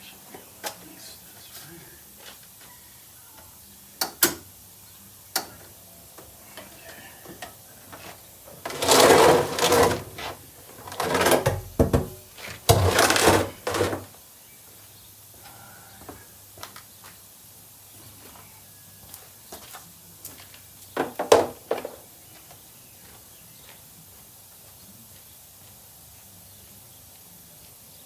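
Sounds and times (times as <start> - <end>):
barrel scraping and rattling: 8.0 - 14.1.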